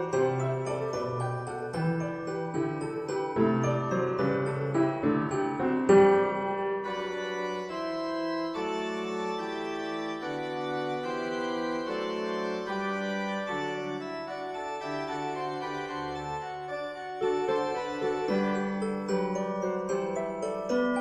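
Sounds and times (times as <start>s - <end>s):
organ-like keyboard chords: 6.8s - 18.6s.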